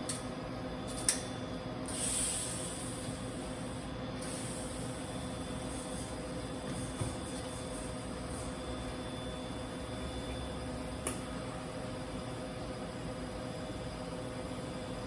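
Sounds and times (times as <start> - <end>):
low electrical hum: 0.0 - 15.0
welding arc hissing: 1.9 - 3.1.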